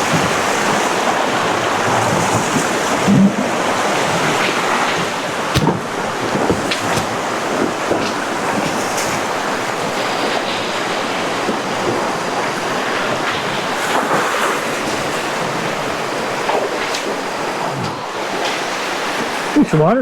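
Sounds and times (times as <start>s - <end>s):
river water rushing over rocks: 0.0s - 20.0s.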